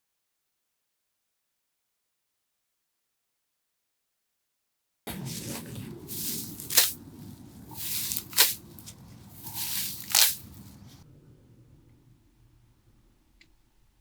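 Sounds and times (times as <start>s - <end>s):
hand tool swishing and crunching: 5.1s - 11.0s.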